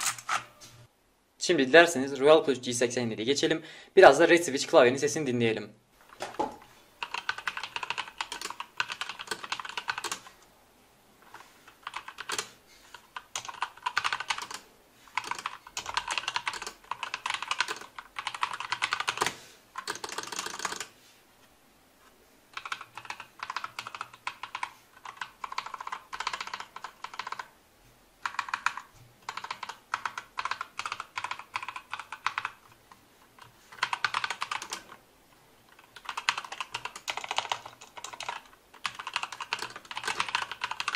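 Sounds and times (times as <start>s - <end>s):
mechanical keyboard typing: 7.0s - 10.3s, 11.7s - 20.9s, 22.5s - 27.5s, 28.2s - 32.8s, 33.4s - 35.0s, 35.7s - 40.9s.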